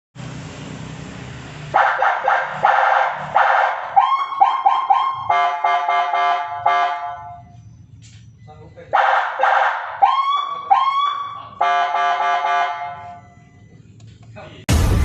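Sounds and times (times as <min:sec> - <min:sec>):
electronic vehicle siren: 0:01.8 - 0:07.9, 0:08.5 - 0:13.8.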